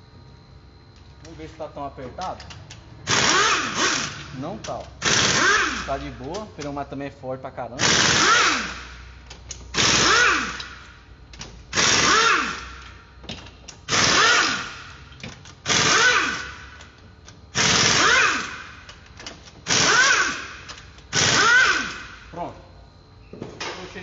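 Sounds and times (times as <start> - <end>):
pneumatic wrench bursts: 2.6 - 6.7, 7.8 - 22.4.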